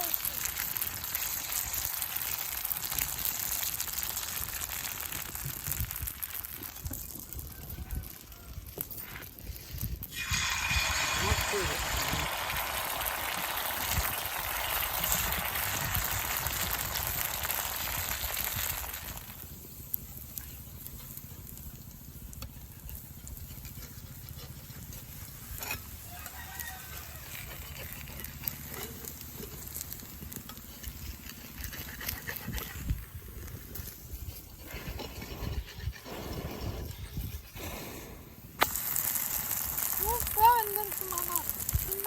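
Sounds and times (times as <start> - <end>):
food sizzling in oil: 0.0 - 8.5, 9.3 - 21.6, 25.1 - 32.5, 38.6 - 42.0.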